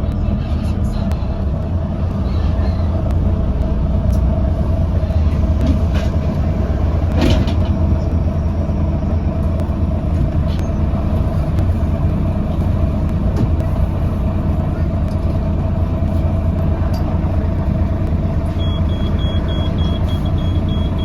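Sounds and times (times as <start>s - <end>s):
bus engine and road rumble: 0.0s - 21.0s
constant whine: 0.0s - 21.0s.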